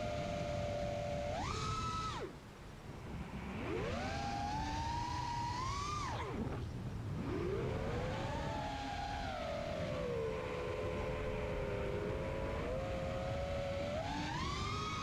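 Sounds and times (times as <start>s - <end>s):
quadcopter propellers whining: 3.3s - 15.0s.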